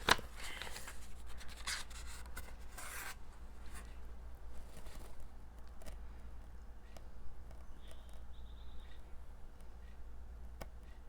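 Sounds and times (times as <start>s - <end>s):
gift packaging rustling: 0.0s - 3.8s.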